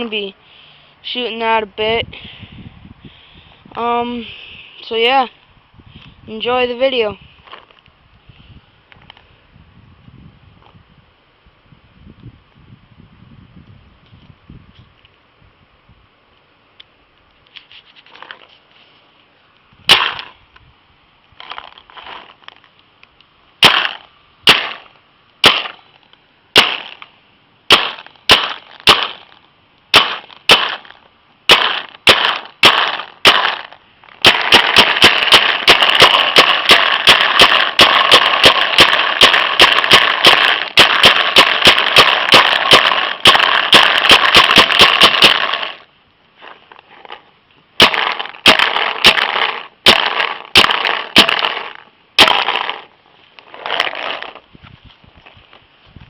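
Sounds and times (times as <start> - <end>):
paintball gun firing: 19.9 - 20.4, 23.6 - 25.8, 26.6 - 27.1, 27.7 - 45.8, 47.8 - 52.9.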